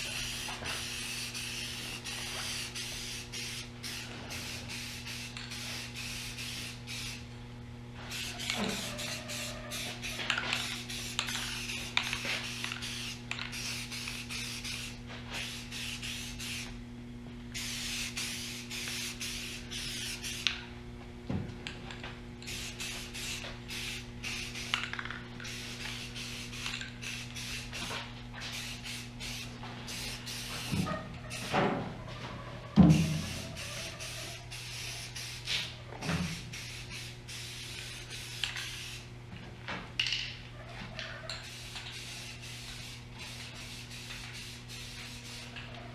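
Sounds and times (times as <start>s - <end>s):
aerosol spray can hissing: 0.0s - 7.2s, 8.1s - 16.7s, 17.6s - 20.4s, 22.4s - 24.8s, 25.4s - 27.9s, 28.5s - 31.6s, 32.9s - 35.6s, 41.5s - 45.5s
steady low hum: 0.0s - 40.6s.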